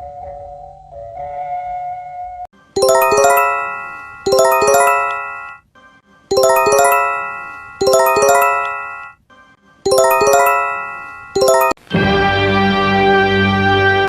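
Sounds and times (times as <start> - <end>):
electronic bell-like alert chime: 2.8 - 5.6, 6.3 - 9.2, 9.9 - 11.8.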